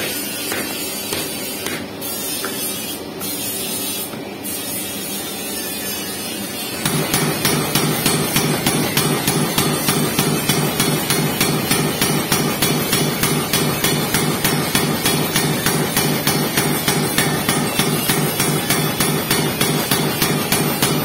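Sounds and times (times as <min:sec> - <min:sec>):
power hammer pounding: 0:06.8 - 0:21.0.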